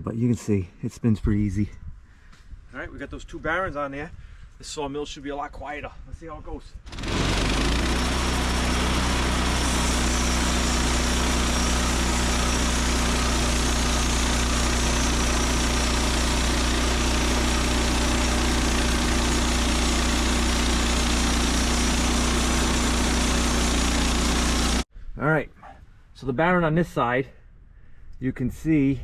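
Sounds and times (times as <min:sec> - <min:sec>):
band saw blade spinning: 0:06.9 - 0:24.8
gas engine running: 0:06.9 - 0:24.8.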